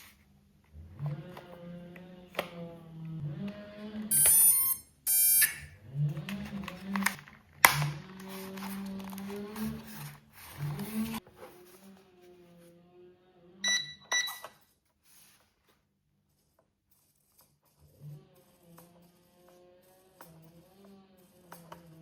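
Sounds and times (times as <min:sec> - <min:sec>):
harsh electronic beeps: 0:04.1 - 0:05.7, 0:13.6 - 0:14.4.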